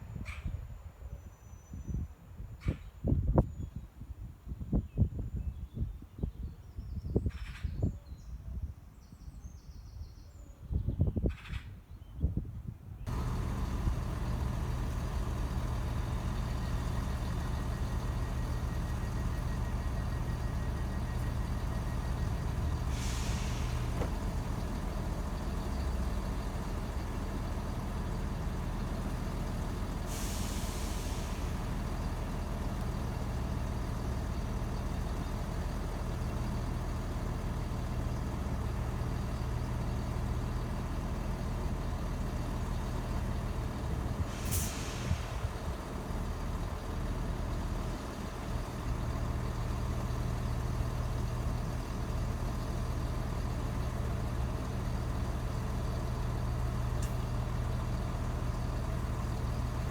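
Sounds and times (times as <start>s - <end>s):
air brake hiss: 13.1s - 25.3s, 29.1s - 32.9s, 43.9s - 46.2s
diesel train engine idling: 13.1s - 59.9s.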